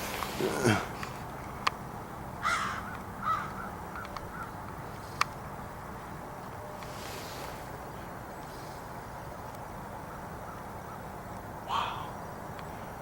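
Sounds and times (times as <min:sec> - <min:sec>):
crow calling: 0:02.4 - 0:04.6, 0:10.1 - 0:12.3.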